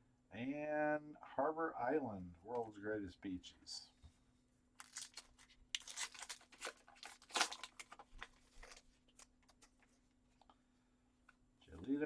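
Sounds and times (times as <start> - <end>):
wrapper and cards rustling: 4.8 - 10.0.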